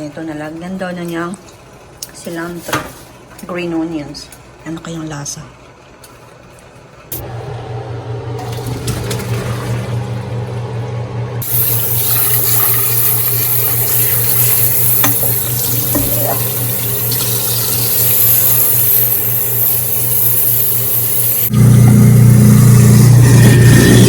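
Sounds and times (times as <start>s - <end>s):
steady low hum: 7.1s - 24.0s
tap running into sink: 14.2s - 17.7s.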